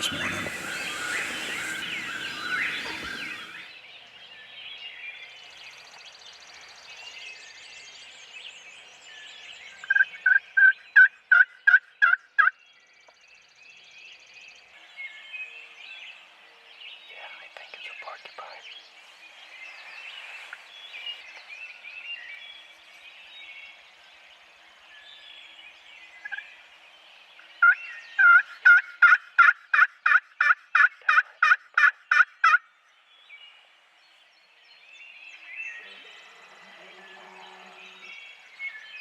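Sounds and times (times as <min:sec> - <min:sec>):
turkey yelps: 0:00.0 - 0:03.6, 0:27.6 - 0:32.6
songbirds chirping: 0:00.0 - 0:39.0.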